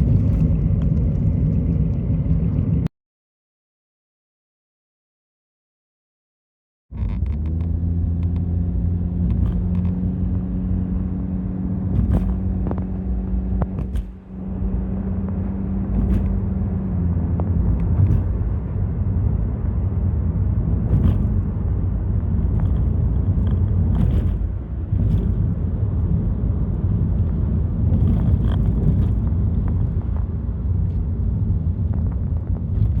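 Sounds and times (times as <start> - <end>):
steady low hum: 8.6 - 33.0
tyre and running gear rumble: 11.7 - 18.7.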